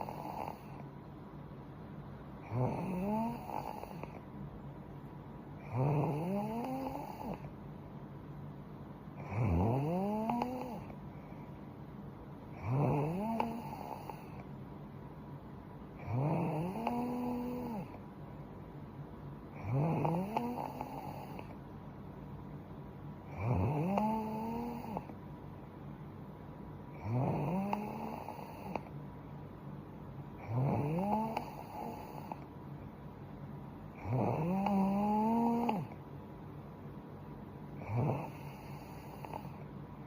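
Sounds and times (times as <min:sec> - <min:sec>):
woman snoring: 0:00.0 - 0:00.8, 0:02.4 - 0:04.2, 0:05.6 - 0:07.5, 0:09.2 - 0:11.0, 0:12.6 - 0:14.4, 0:16.0 - 0:18.0, 0:19.6 - 0:21.6, 0:23.3 - 0:25.1, 0:26.9 - 0:28.9, 0:30.4 - 0:32.5, 0:33.9 - 0:36.0, 0:37.8 - 0:39.6.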